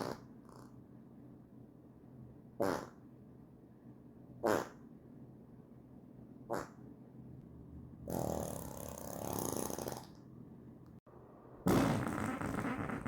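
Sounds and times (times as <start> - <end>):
farts: 2.6 - 3.0, 4.4 - 4.8, 8.1 - 10.2, 11.6 - 13.0.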